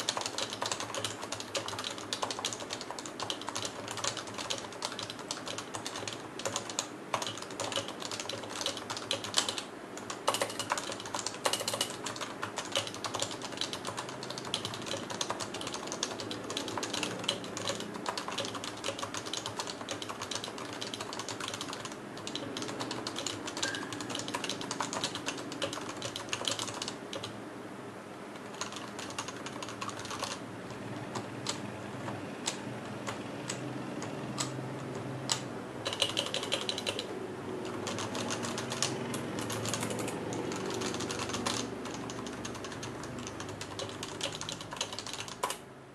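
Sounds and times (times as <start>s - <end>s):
fast typing on keyboard: 0.0s - 27.4s, 28.4s - 45.6s.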